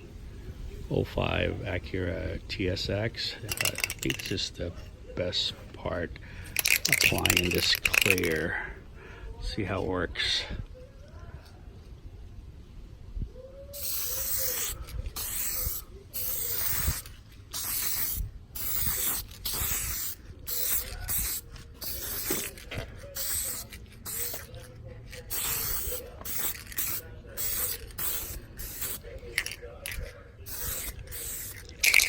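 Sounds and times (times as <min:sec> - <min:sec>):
aerosol can spraying: 0:06.6 - 0:08.3, 0:13.8 - 0:32.0.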